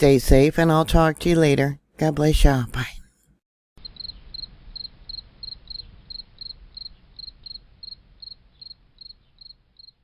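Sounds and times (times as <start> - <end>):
cricket chirping: 3.8 - 10.0.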